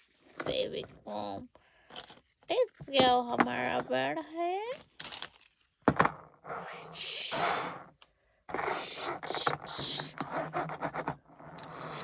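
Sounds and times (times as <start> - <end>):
scraping and rubbing with clicks: 6.4 - 12.0.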